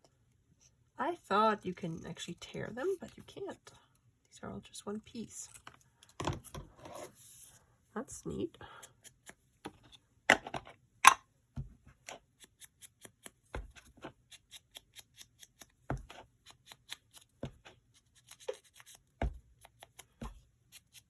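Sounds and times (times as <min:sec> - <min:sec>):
scissors snipping paper: 0:08.7 - 0:09.4, 0:12.0 - 0:21.0.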